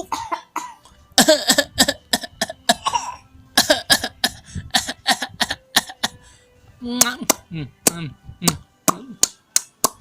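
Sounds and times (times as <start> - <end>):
child forced coughing: 0.0 - 6.2.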